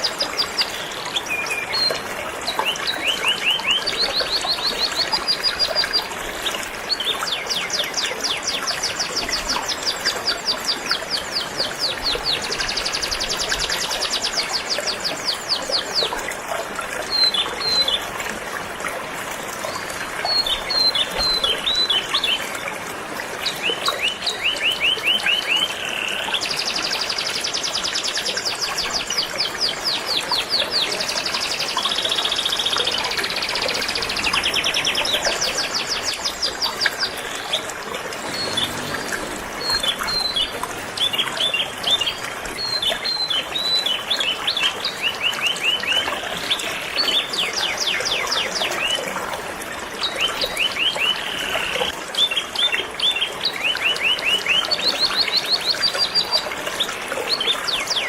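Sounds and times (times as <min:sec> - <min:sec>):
stream water flowing: 0:00.0 - 0:58.0.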